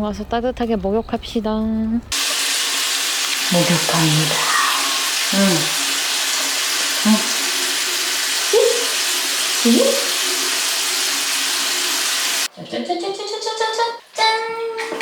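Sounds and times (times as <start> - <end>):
tap water filling bath: 2.1 - 12.5.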